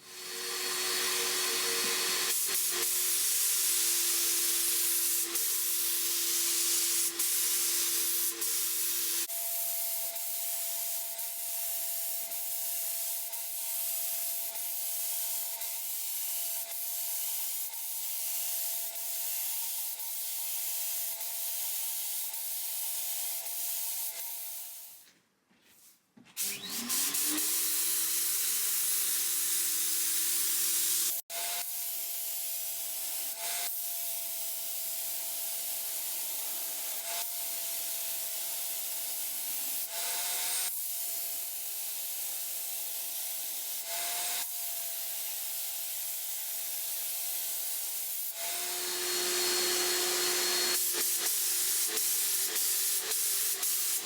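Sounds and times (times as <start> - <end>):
electric sander on wood: 0.0 - 9.3, 48.4 - 54.0.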